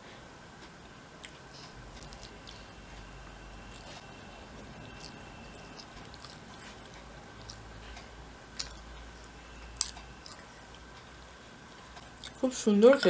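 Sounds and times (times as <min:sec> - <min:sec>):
person chewing food: 0:01.2 - 0:08.9, 0:09.8 - 0:10.8, 0:12.0 - 0:12.4.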